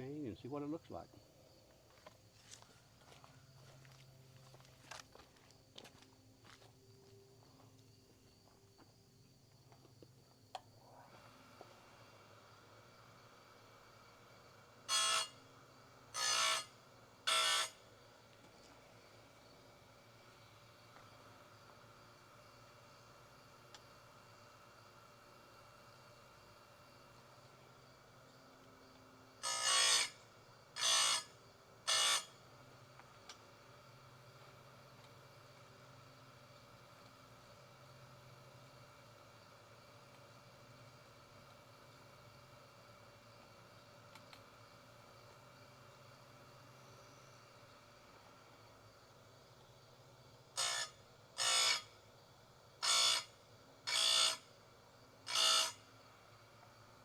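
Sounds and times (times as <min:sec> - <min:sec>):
grinding stone buzzing on saw chain: 0:14.8 - 0:15.5, 0:16.1 - 0:17.9, 0:29.4 - 0:32.4, 0:50.6 - 0:52.0, 0:52.8 - 0:54.5, 0:55.2 - 0:56.0.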